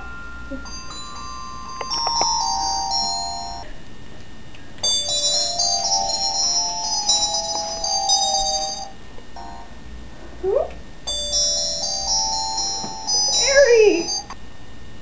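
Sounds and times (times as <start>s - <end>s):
cell phone ringtone melody: 0.0s - 3.7s, 4.8s - 9.8s, 11.1s - 14.3s.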